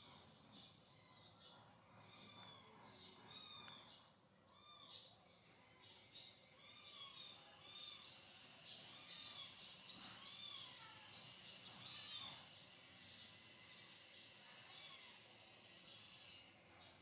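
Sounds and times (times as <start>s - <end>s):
baby monkey calling: 8.9s - 12.4s.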